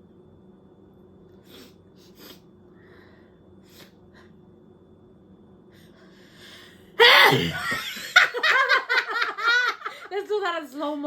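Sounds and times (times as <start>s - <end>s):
person sniffing through nose: 1.4s - 2.4s.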